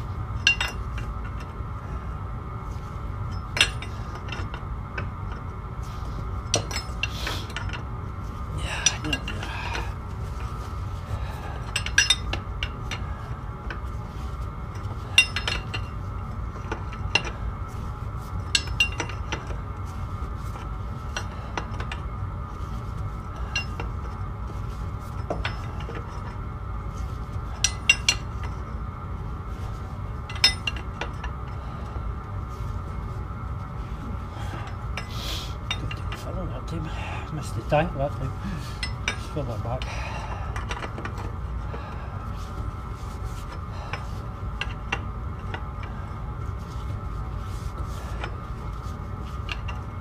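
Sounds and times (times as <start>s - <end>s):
steady low hum: 0.0s - 50.0s
metal tools clinking: 0.4s - 1.0s, 8.6s - 10.5s, 11.6s - 13.0s.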